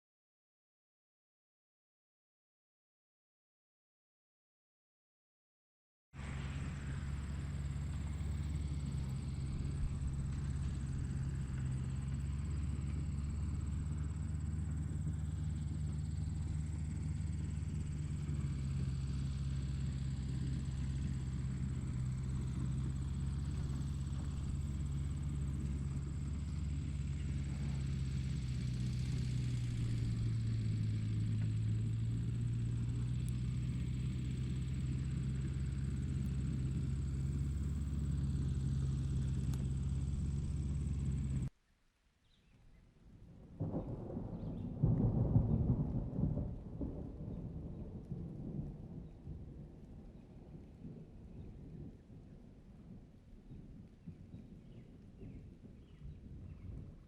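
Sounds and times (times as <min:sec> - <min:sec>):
motor vehicle droning: 0:06.2 - 0:41.5, 0:43.6 - 0:52.2.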